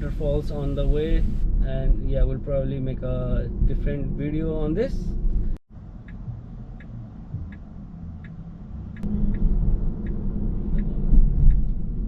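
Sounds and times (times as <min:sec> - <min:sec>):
road and tyre rumble: 0:00.0 - 0:12.0
faint regular tick: 0:06.0 - 0:11.8.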